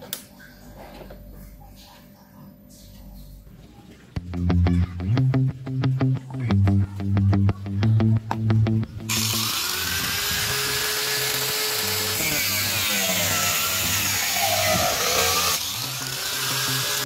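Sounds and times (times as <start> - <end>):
background music: 4.2 - 9.9
power tool running: 9.1 - 17.0.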